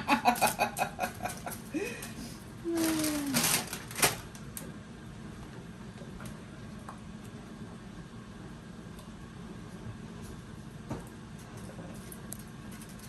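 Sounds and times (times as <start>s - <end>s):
faint steady room hum: 0.0s - 13.0s
tortilla chips crackling and rustling: 2.7s - 4.7s.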